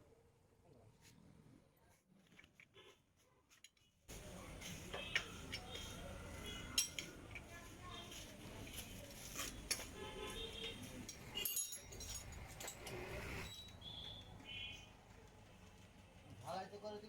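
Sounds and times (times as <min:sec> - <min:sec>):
faint background voices: 0:04.1 - 0:11.5
metal tools clinking: 0:06.8 - 0:07.1, 0:10.8 - 0:13.8.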